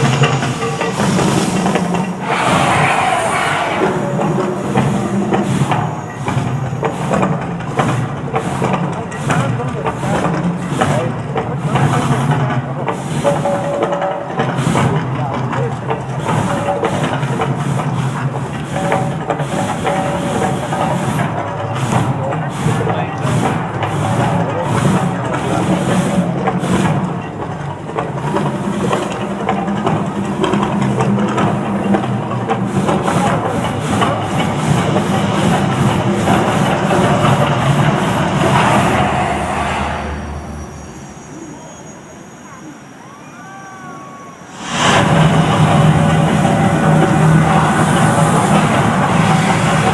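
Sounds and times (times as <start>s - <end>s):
steady low rumble: 0.0s - 10.2s, 28.6s - 41.5s, 44.5s - 49.9s
loud hissing effects: 0.0s - 10.9s, 28.4s - 43.6s, 44.4s - 49.9s.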